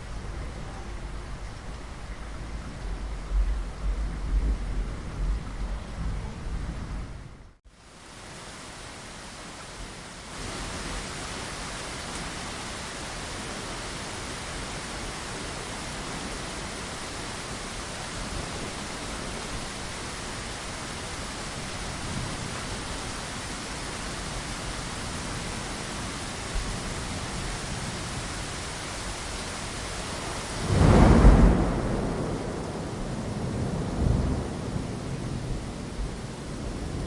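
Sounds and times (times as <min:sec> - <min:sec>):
deep thunder rumble: 0:02.6 - 0:07.5, 0:30.6 - 0:37.0
rain against window pane: 0:09.8 - 0:37.0.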